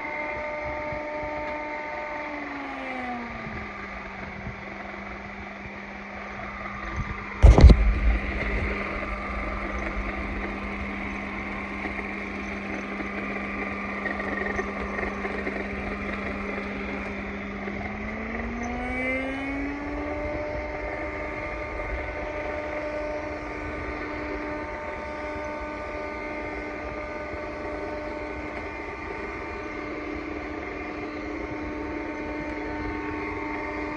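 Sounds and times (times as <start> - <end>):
loud knock: 7.4 - 12.0.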